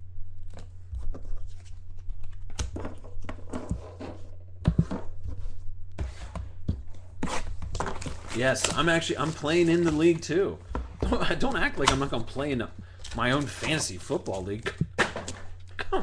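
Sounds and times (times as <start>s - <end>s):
low electrical hum: 0.0s - 16.0s
cards and wrappers rustling: 0.4s - 4.3s, 7.3s - 14.7s.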